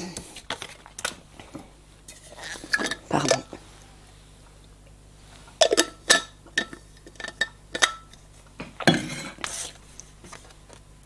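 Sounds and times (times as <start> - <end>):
cards rustling: 0.2 - 1.5.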